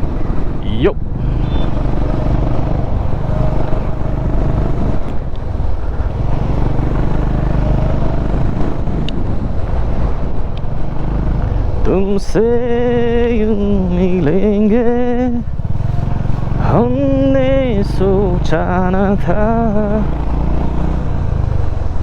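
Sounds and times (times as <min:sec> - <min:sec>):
motorcycle engine running: 0:00.0 - 0:22.0
wind buffeting microphone: 0:00.0 - 0:22.0.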